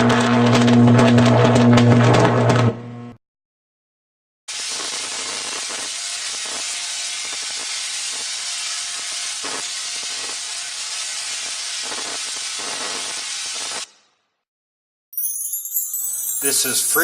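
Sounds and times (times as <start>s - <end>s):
electricity crackling hiss: 4.5s - 13.9s.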